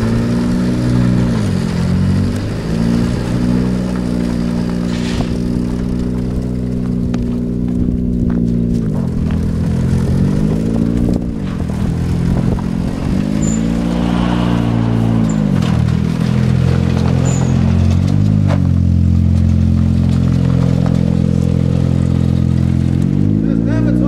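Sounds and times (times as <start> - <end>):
car engine revving: 9.0 - 23.4.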